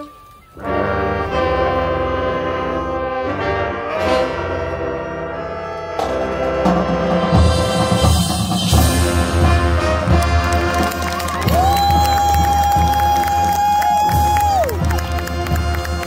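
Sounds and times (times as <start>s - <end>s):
marching band brass chords: 0.0s - 16.0s
timpani: 0.6s - 16.0s
heavy low drums: 6.0s - 16.0s.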